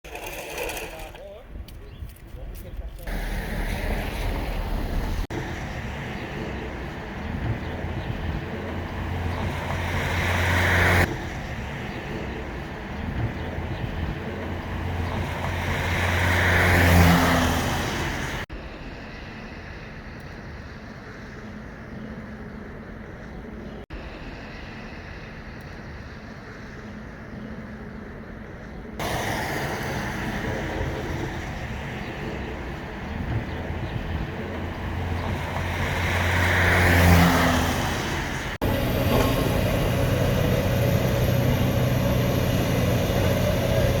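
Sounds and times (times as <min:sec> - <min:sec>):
excavator engines running: 0:00.0 - 0:01.5, 0:03.0 - 0:17.5, 0:22.7 - 0:44.0
excavator diesel engine running: 0:38.5 - 0:44.0.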